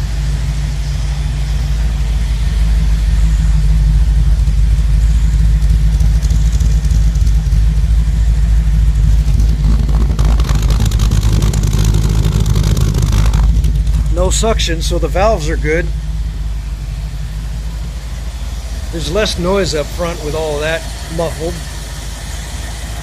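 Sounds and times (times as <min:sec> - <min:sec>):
car engine running: 0:00.0 - 0:23.0.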